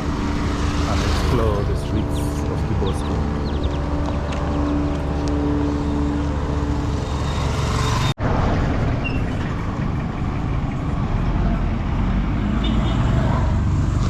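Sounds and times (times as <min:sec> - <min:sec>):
engine and road rumble: 0:00.0 - 0:14.0.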